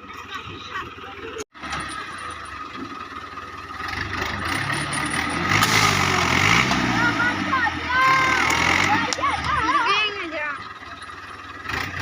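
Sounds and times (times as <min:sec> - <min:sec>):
tractor engine revving: 0:00.0 - 0:12.0.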